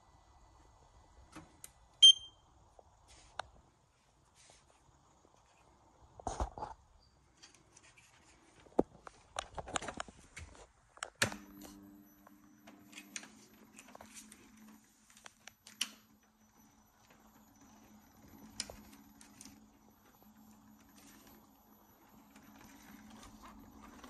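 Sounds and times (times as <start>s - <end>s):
faint high whine: 9.8s - 24.0s.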